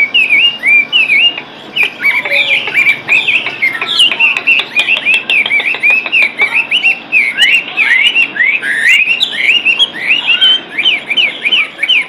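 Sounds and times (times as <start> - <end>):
songbird whistling song: 0.0 - 12.0.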